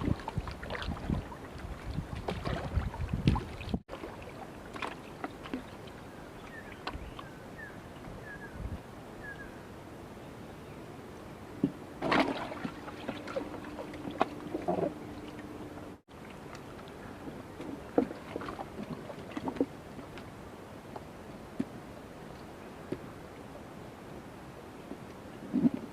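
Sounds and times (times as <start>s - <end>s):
light water sounds: 0.0s - 9.5s, 11.2s - 25.9s
steady hum: 10.8s - 16.1s.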